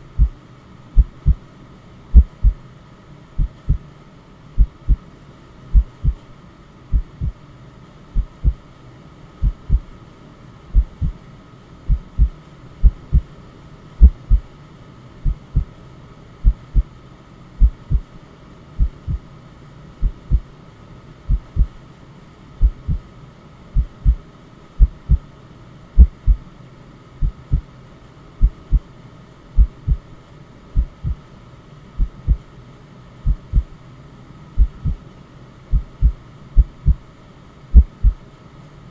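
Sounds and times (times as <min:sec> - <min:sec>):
slow heartbeat: 0:00.0 - 0:00.4, 0:01.0 - 0:01.4, 0:02.1 - 0:02.6, 0:03.4 - 0:03.8, 0:04.6 - 0:05.0, 0:05.7 - 0:06.2, 0:06.9 - 0:07.4, 0:08.2 - 0:08.6, 0:09.4 - 0:09.9, 0:10.7 - 0:11.2, 0:11.9 - 0:13.3, 0:14.0 - 0:14.5, 0:15.2 - 0:15.8, 0:16.4 - 0:16.9, 0:17.6 - 0:18.1, 0:18.8 - 0:19.2, 0:20.0 - 0:20.5, 0:21.3 - 0:21.8, 0:22.6 - 0:23.1, 0:23.8 - 0:24.2, 0:24.8 - 0:25.3, 0:26.0 - 0:26.4, 0:27.2 - 0:27.7, 0:28.4 - 0:28.9, 0:29.6 - 0:30.0, 0:30.8 - 0:31.2, 0:32.0 - 0:32.5, 0:33.2 - 0:33.7, 0:34.6 - 0:35.0, 0:35.7 - 0:37.0, 0:37.7 - 0:38.2
white noise hiss: 0:00.0 - 0:38.9.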